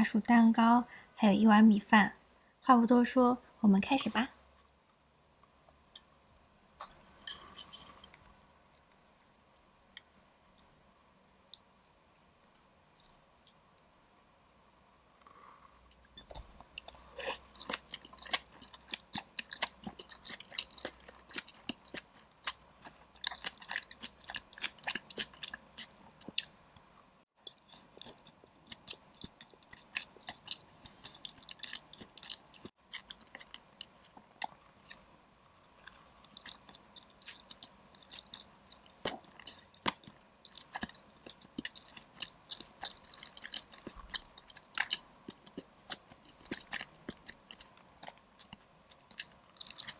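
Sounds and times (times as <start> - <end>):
chewing and crunching food: 15.2 - 49.9.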